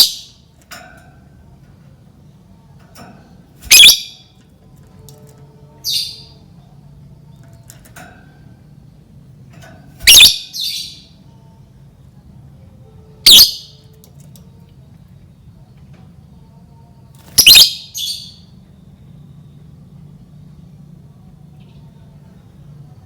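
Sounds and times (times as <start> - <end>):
lovebird shrill calls: 3.7 - 4.2, 10.1 - 11.0, 13.3 - 13.7, 17.4 - 18.4.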